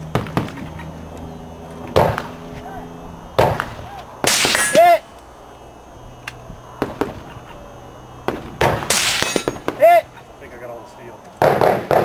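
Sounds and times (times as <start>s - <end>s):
bullet striking steel target: 3.4s - 4.9s, 8.3s - 9.8s.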